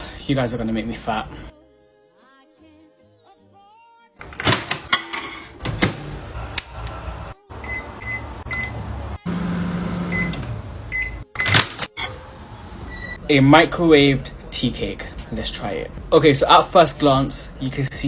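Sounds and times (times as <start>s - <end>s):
microwave humming: 5.6s - 11.5s
high keypad beeps: 7.6s - 8.8s, 10.1s - 11.6s.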